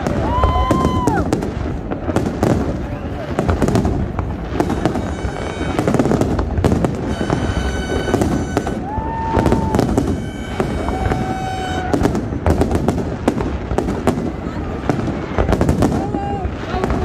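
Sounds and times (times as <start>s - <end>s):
fireworks bursting and crackling: 0.0s - 17.0s
whistle-like tone: 7.1s - 11.9s
lower whistles: 7.1s - 12.0s.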